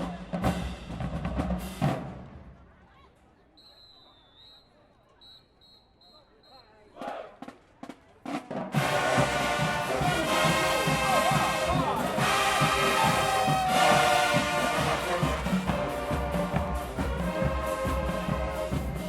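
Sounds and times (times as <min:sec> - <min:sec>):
marching band playing: 0:00.0 - 0:02.6, 0:07.0 - 0:19.0.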